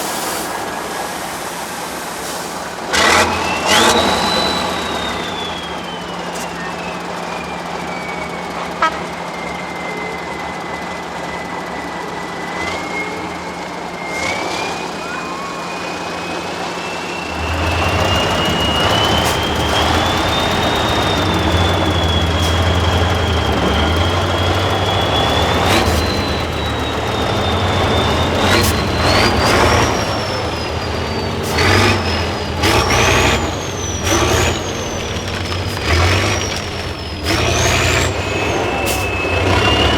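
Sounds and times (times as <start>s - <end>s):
truck diesel engine whining: 0.0s - 39.9s.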